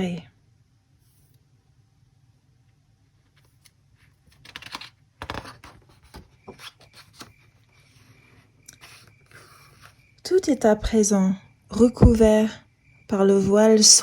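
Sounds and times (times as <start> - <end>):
paper pages turning: 3.2 - 10.0.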